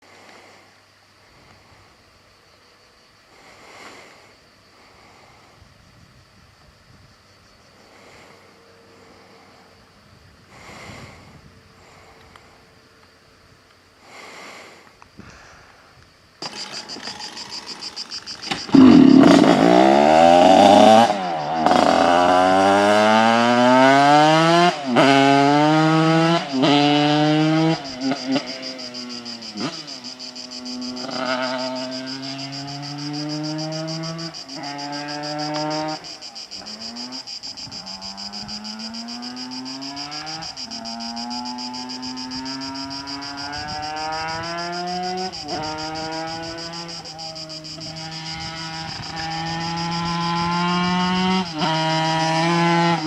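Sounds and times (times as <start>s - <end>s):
moped engine revving: 16.4s - 53.0s.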